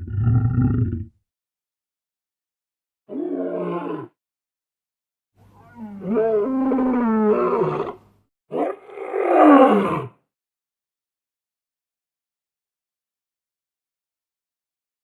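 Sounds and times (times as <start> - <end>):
big cat roaring: 0.0 - 1.1, 5.6 - 10.2.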